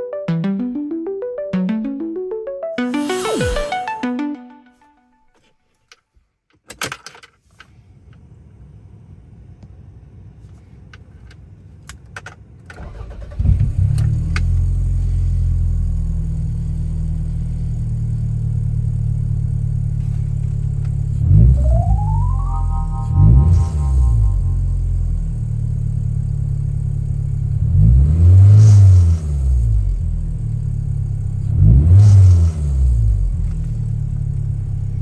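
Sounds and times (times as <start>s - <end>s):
car engine starting and idling: 12.7s - 28.0s.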